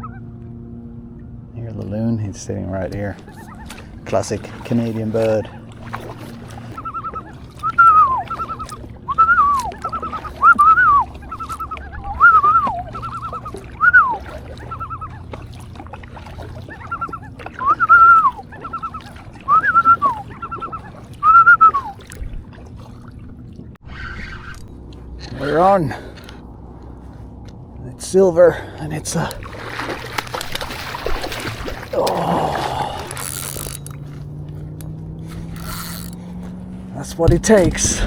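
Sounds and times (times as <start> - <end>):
loon calling: 0.0 - 0.4, 2.5 - 22.2.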